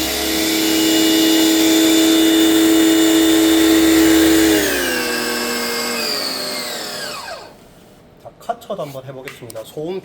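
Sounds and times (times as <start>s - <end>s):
pressure washer motor hum: 0.0s - 7.6s.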